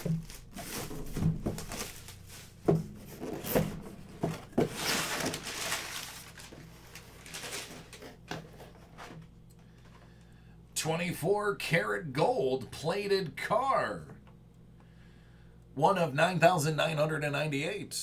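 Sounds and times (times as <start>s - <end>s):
cardboard knocks and clicks: 0.0s - 2.0s, 2.6s - 5.0s
packaging rustle: 0.0s - 10.2s.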